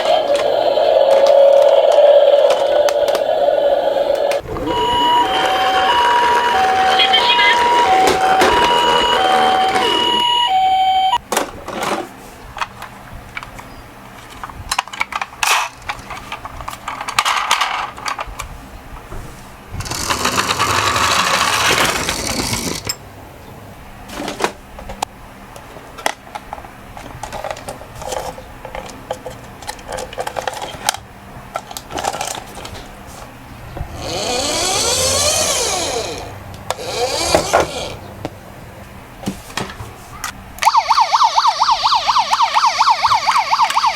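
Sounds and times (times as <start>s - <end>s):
toy cars clicking and knocking: 0.0s - 4.4s, 14.7s - 18.4s, 19.8s - 23.0s, 26.0s - 32.8s, 34.0s - 38.0s
toy car wheels rolling: 0.0s - 10.3s, 19.8s - 23.0s, 27.0s - 32.8s, 33.9s - 38.0s.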